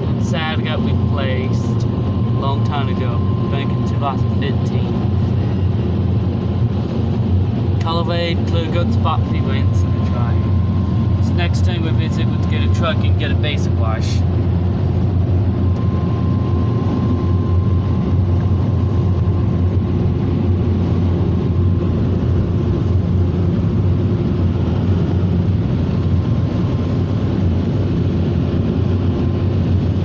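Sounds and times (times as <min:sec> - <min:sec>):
dryer blowers roaring: 0:00.0 - 0:16.0.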